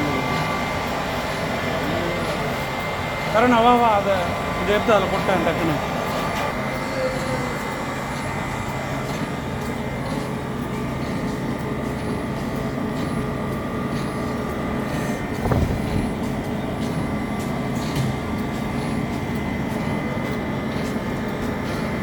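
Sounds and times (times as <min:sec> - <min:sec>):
high steady machine whines: 0:00.0 - 0:22.0
machinery low hum: 0:00.0 - 0:22.0
machine thump: 0:15.4 - 0:16.3.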